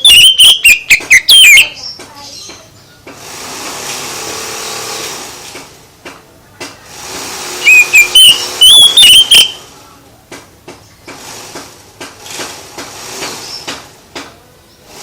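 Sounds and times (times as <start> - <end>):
songbird whistled song: 0.0 - 3.1, 7.6 - 10.0
hiss: 3.1 - 5.7, 6.8 - 7.7, 11.1 - 14.1.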